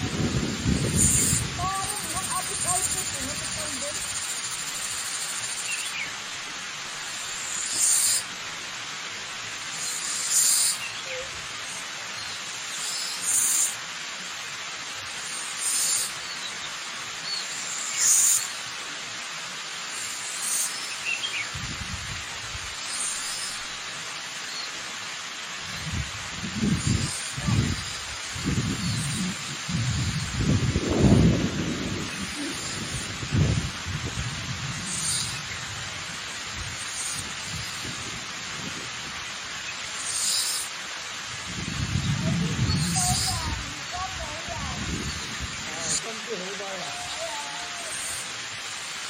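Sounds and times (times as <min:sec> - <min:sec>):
waterfall rushing: 0:00.0 - 0:49.0
bird chirping: 0:00.8 - 0:06.2, 0:09.7 - 0:13.8, 0:15.1 - 0:18.7, 0:26.6 - 0:31.3, 0:34.7 - 0:35.8, 0:42.0 - 0:43.6.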